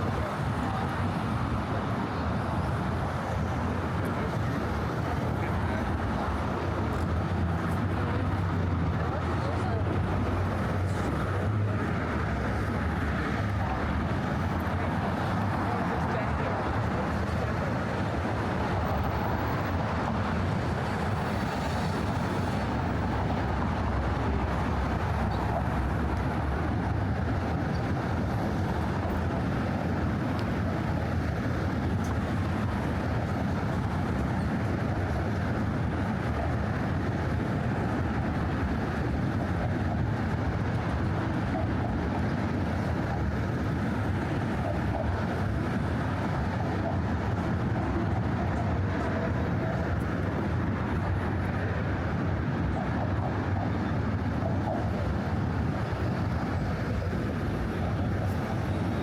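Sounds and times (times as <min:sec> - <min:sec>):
steady traffic hum: 0:00.0 - 0:59.0.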